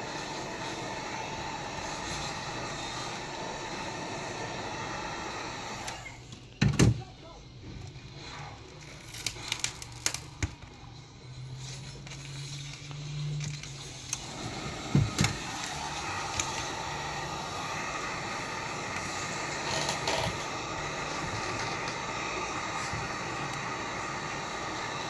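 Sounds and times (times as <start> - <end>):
heat gun blowing: 0.0 - 6.3, 11.4 - 25.0.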